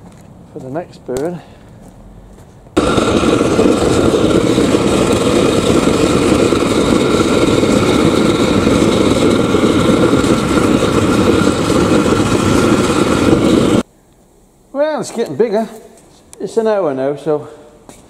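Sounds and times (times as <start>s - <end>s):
faint steady whine: 0.0s - 18.0s
oil burner roaring: 2.8s - 13.9s.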